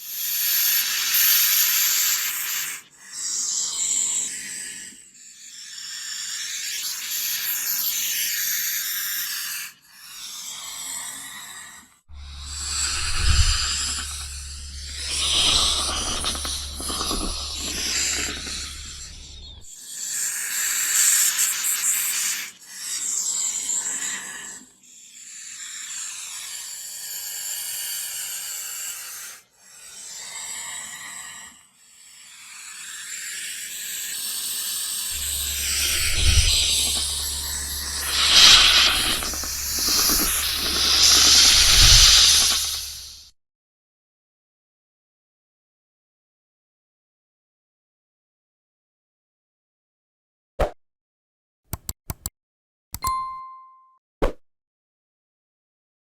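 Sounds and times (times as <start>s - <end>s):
steady low hum: 12.1s - 19.7s, 35.2s - 43.2s
snake hissing: 12.2s - 19.4s, 35.2s - 43.2s.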